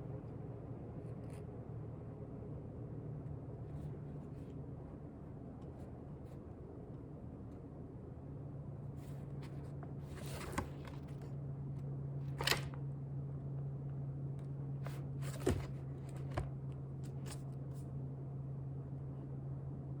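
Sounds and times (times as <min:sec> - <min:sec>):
low room hum: 0:00.0 - 0:20.0
book pages rustling: 0:09.1 - 0:11.2, 0:14.8 - 0:17.5.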